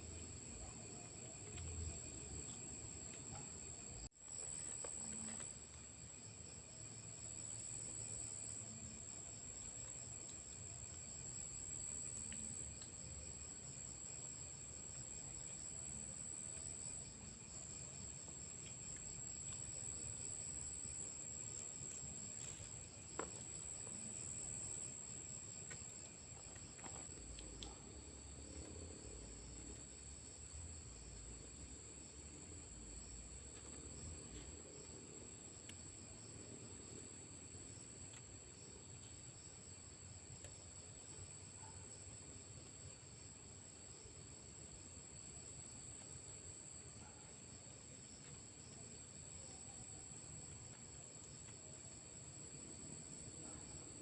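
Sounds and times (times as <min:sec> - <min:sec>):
crickets trilling: 0:00.0 - 0:54.0.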